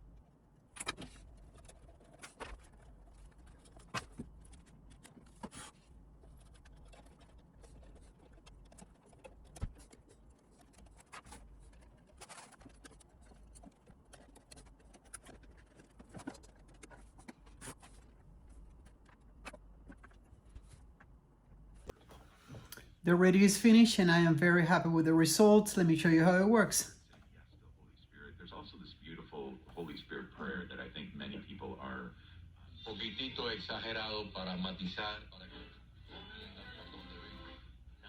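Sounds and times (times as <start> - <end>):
low steady hum: 13.1 - 38.0.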